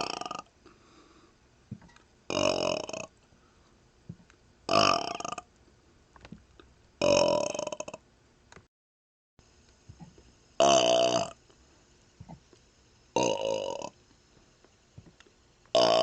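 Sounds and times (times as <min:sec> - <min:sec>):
man burping: 0:00.0 - 0:00.5, 0:02.3 - 0:03.1, 0:04.7 - 0:05.4, 0:07.0 - 0:08.0, 0:10.6 - 0:11.4, 0:13.2 - 0:13.9, 0:15.8 - 0:16.0.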